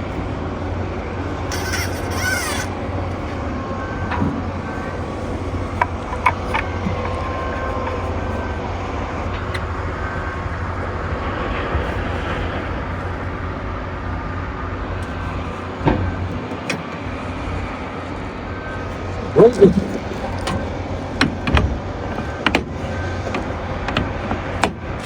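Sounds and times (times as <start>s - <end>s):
machinery humming: 0.0s - 25.0s
sharp clicks and knocks: 5.7s - 8.0s, 19.4s - 24.8s.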